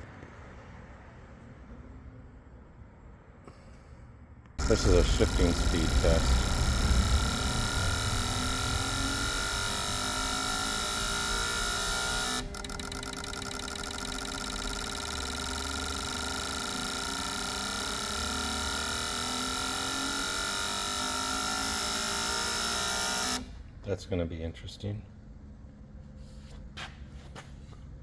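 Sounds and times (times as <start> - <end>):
fuel injectors clicking: 4.6 - 23.6
steady machine whine: 4.6 - 23.8.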